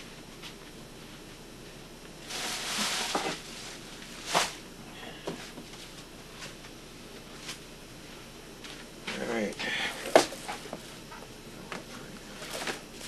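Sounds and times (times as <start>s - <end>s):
rustling and handling noises: 2.1s - 4.7s, 5.3s - 13.0s.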